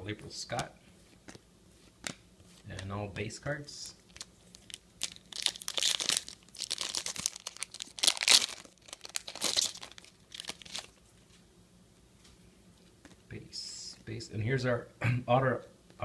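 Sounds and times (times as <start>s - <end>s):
wrapper tearing and crinkling: 4.0s - 11.0s.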